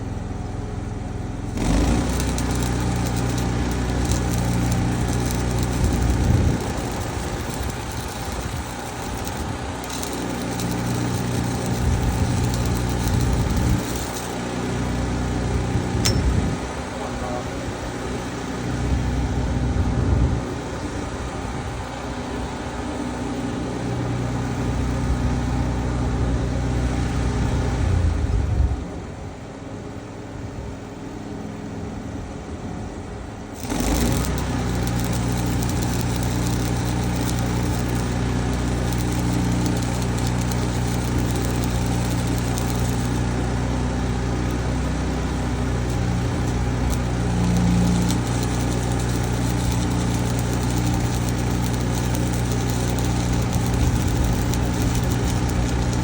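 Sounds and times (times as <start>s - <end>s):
engine idling: 0.0s - 15.5s, 33.6s - 56.0s.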